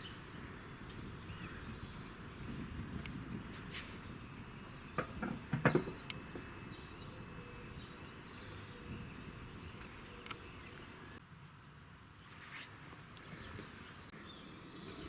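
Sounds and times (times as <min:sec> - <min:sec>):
outdoor background noise: 0:00.0 - 0:15.0
sharp knocks and clatters: 0:05.0 - 0:06.5.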